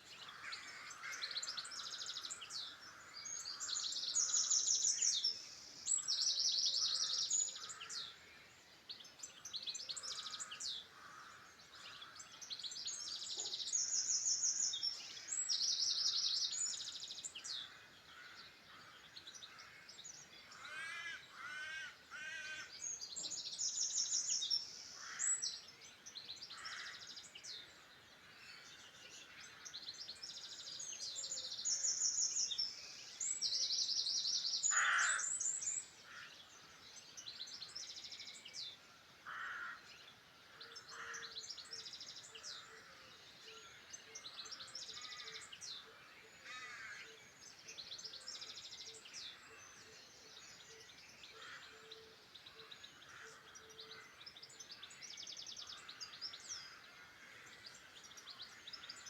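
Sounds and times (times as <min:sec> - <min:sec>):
songbirds trilling: 0:00.0 - 0:59.0
harsh lower bird calls: 0:34.6 - 0:36.3.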